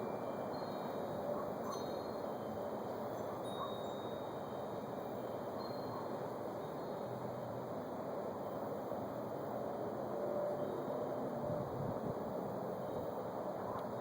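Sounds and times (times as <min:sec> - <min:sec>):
faint high chime-like notes: 0:00.0 - 0:07.6, 0:10.2 - 0:11.1
outdoor background hiss: 0:00.0 - 0:14.0.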